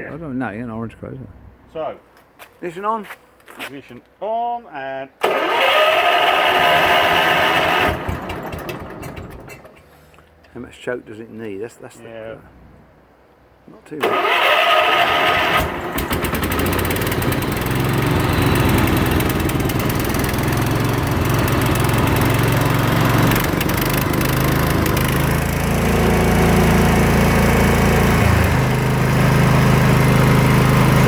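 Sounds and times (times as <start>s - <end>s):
small petrol engine running: 5.2s - 9.6s, 14.1s - 31.0s.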